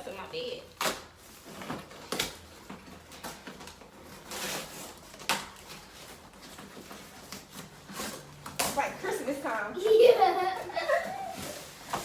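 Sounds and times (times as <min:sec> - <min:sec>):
cardboard scraping and rustling: 0:01.2 - 0:08.9, 0:10.9 - 0:12.0.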